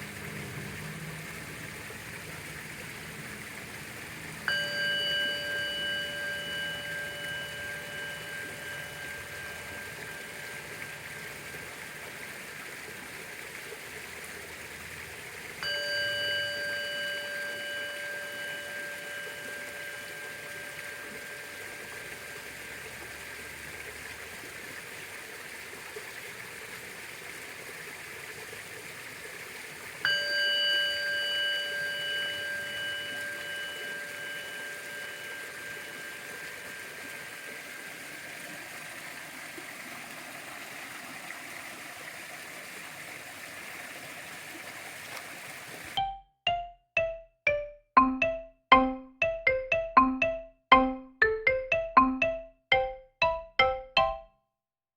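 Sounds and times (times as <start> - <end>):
faint steady hiss: 0.0 - 24.4, 29.9 - 39.6
bowl bell ringing: 4.4 - 12.2, 15.6 - 22.8, 30.0 - 38.2.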